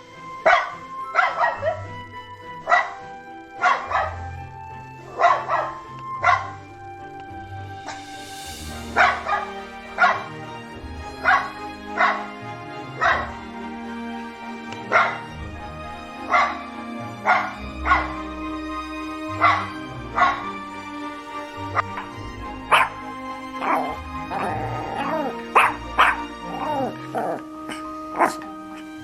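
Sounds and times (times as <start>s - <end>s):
background music: 0.0s - 29.0s
dog barking: 0.4s - 1.8s, 2.6s - 3.0s, 3.6s - 4.2s, 5.1s - 6.6s, 9.0s - 10.3s, 11.2s - 12.3s, 13.0s - 13.4s, 14.9s - 15.3s, 16.2s - 16.6s, 17.2s - 18.2s, 19.4s - 20.6s, 22.7s - 23.0s, 23.6s - 28.4s.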